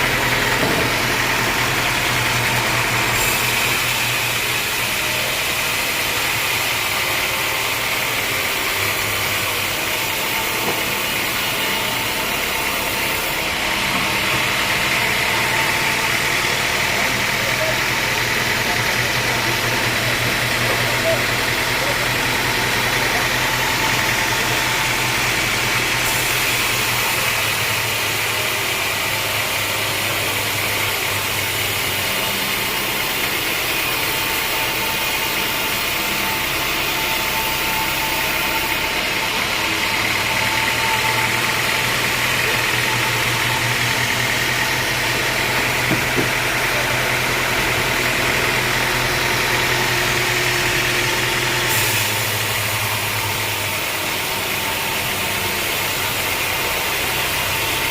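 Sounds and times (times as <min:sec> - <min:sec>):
sawmill engine running: 0:00.0 - 0:57.9
hiss: 0:02.6 - 0:07.8, 0:23.6 - 0:39.4, 0:48.4 - 0:57.9.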